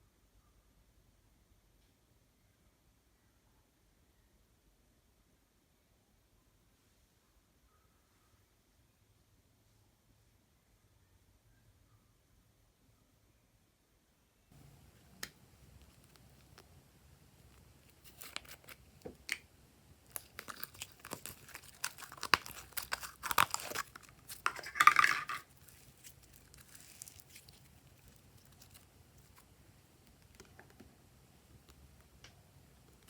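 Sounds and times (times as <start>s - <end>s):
faint handling sounds: 14.6s - 33.0s
sticky slime crackling: 17.4s - 19.4s, 20.0s - 30.4s.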